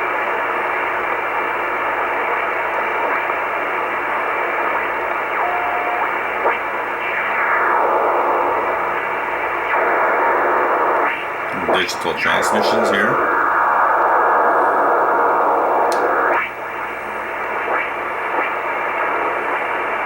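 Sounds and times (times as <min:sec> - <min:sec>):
radio hiss and static: 0:00.0 - 0:20.0
steady radio whistle: 0:00.2 - 0:16.8
gliding radio whistles: 0:04.4 - 0:09.0.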